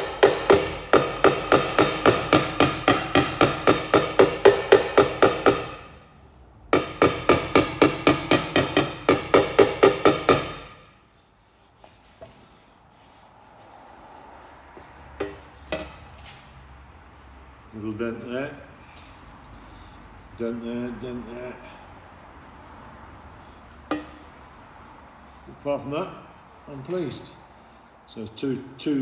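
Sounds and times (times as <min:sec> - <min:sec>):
hammer tapping on steel pipe: 0:00.0 - 0:06.0, 0:06.7 - 0:10.9, 0:15.2 - 0:16.0, 0:23.9 - 0:24.4.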